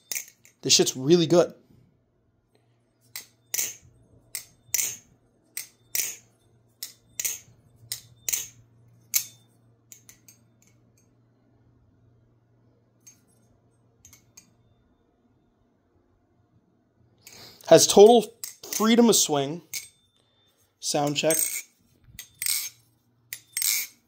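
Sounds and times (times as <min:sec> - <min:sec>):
butterfly knife handles clacking: 0:00.0 - 0:00.6, 0:03.0 - 0:11.1, 0:14.0 - 0:14.6, 0:17.9 - 0:20.0, 0:21.0 - 0:24.0.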